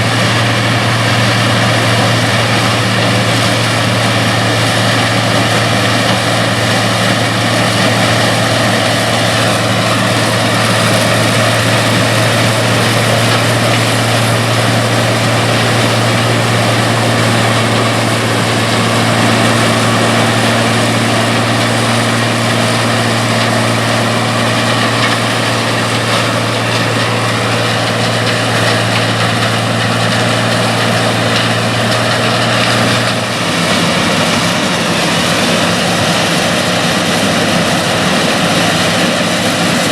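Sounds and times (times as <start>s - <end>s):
harvesting machinery rushing: 0.0s - 39.9s
low engine hum: 0.0s - 39.9s.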